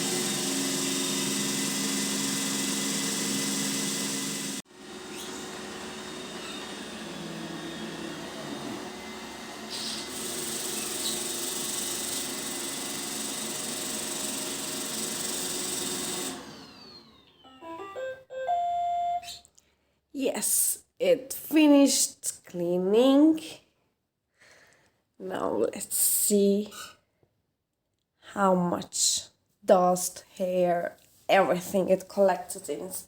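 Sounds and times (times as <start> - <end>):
robot vacuum whirring: 0.0 - 11.3, 13.9 - 18.0
electronic melody of beeps: 17.4 - 19.4.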